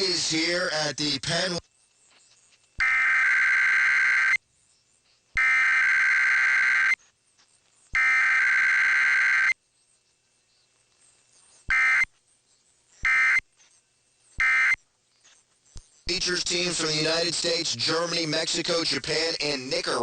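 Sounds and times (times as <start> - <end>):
buzzy data bursts: 15.7 - 20.0.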